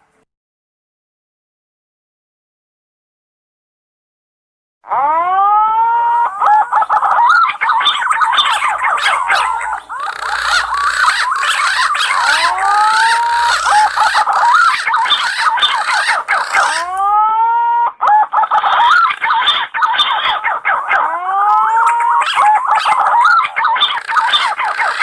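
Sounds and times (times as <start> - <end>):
pigeons calling with whistled notes: 6.0 - 25.0.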